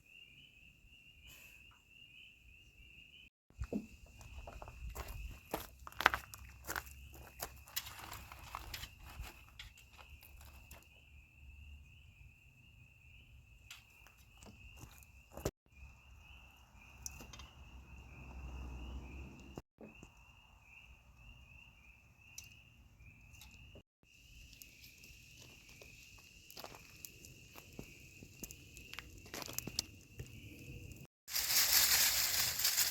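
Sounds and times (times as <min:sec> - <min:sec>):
insects chirring: 0:00.0 - 0:32.9
crunching footsteps: 0:03.6 - 0:10.9, 0:14.0 - 0:15.5, 0:25.3 - 0:30.4, 0:31.3 - 0:32.9.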